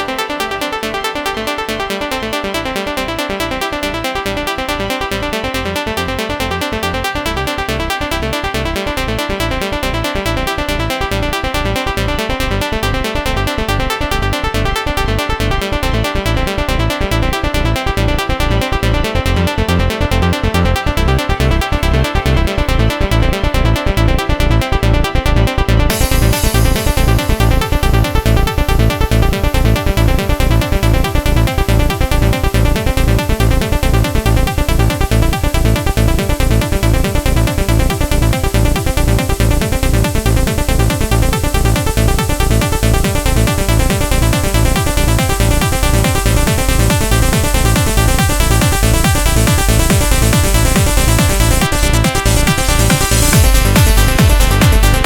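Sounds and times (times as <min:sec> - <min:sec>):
trance music with synths: 0:00.0 - 0:55.0
four-on-the-floor kick drum: 0:25.9 - 0:55.0
rising synth sweep: 0:42.9 - 0:55.0.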